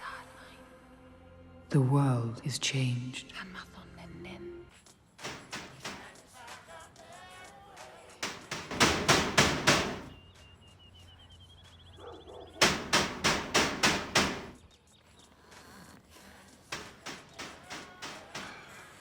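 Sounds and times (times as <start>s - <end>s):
knocking on a door: 5.2s - 6.2s, 8.2s - 10.2s, 12.5s - 14.6s, 16.7s - 18.9s.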